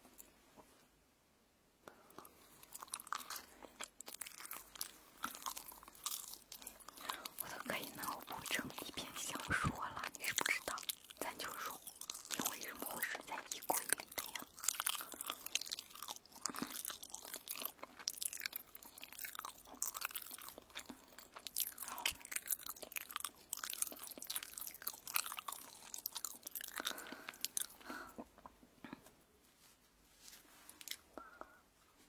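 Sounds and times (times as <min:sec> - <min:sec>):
crunching toast: 0:02.2 - 0:08.6, 0:10.1 - 0:28.1.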